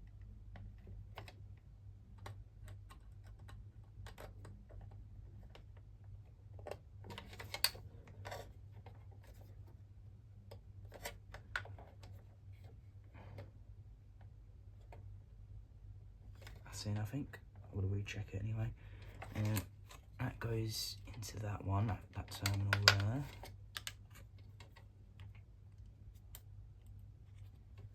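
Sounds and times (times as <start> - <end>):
clicks and scrapes of plastic parts: 0.1 - 9.8, 10.4 - 13.6, 16.3 - 16.8, 18.9 - 27.9.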